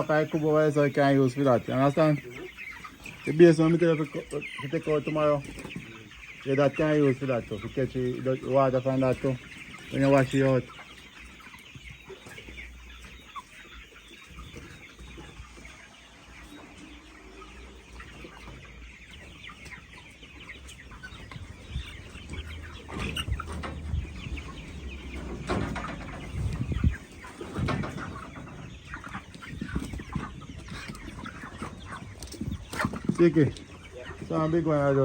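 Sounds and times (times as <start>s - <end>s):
chickens clucking and cheeping: 0.0s - 35.0s.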